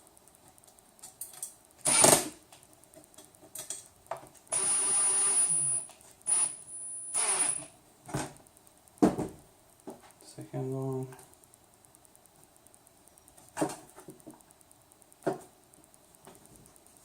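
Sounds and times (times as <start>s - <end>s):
power screwdriver whining: 1.8s - 2.3s, 4.5s - 7.7s.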